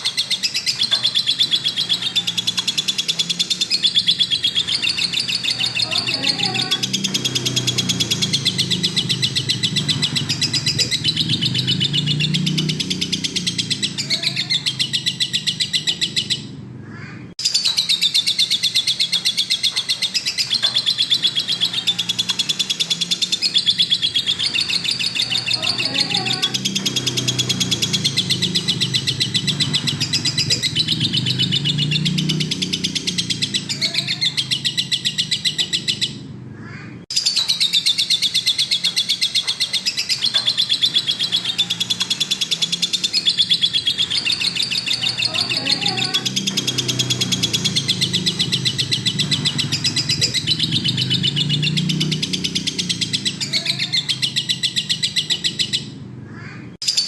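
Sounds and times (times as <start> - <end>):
lovebird chattering trill: 0.0 - 36.2, 37.1 - 57.0.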